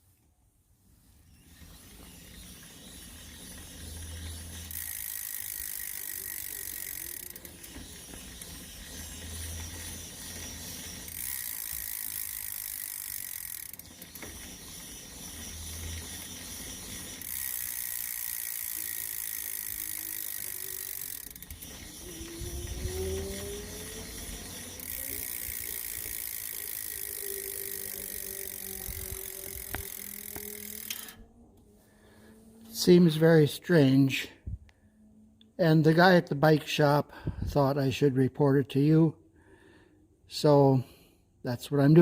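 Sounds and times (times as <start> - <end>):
bike hub mechanical rubbing noise: 0.0 - 31.2.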